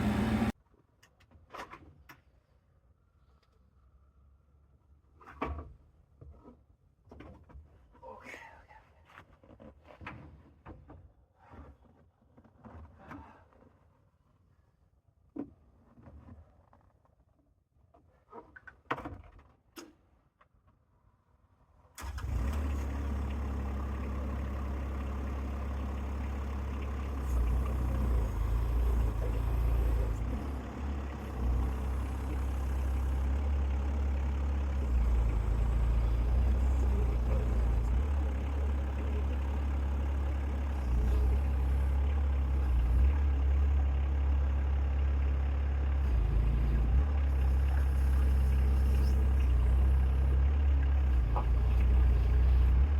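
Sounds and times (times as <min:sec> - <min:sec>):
excavator diesel engine running: 0:00.0 - 0:00.6, 0:22.0 - 0:52.9.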